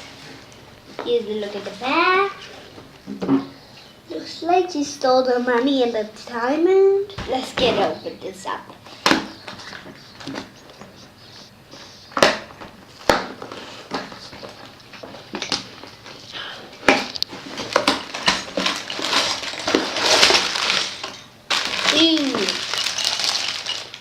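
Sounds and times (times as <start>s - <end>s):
plastic bags crinkling and rattling: 12.2s - 24.0s.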